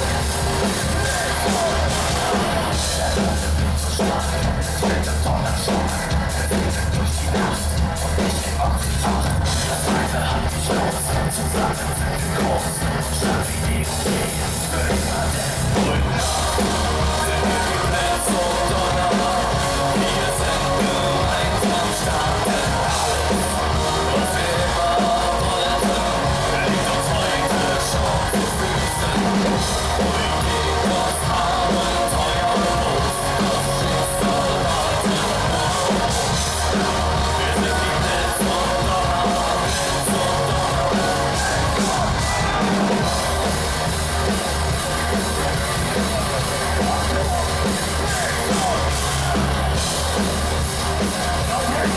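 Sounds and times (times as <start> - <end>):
distorted guitars: 0.0 - 51.9
steady drum beat: 0.0 - 51.9
shouted vocals: 14.1 - 51.9.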